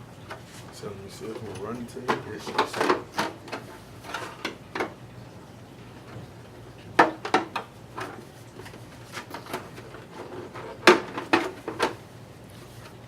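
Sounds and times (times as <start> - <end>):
plastic clicks and knocks: 7.0 - 9.6, 10.8 - 12.0.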